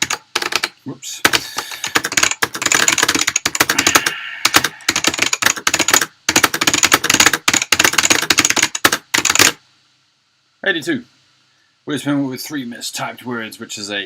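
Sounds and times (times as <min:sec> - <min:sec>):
mechanical keyboard typing: 0:00.0 - 0:09.6.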